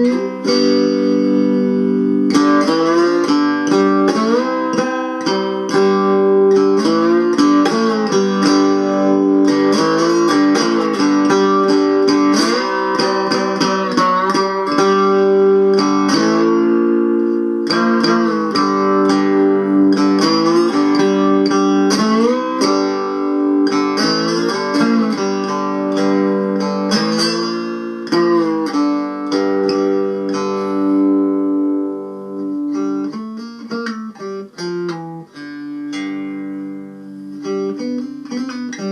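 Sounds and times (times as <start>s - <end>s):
amplified cigar box guitar tune: 0.0s - 38.9s.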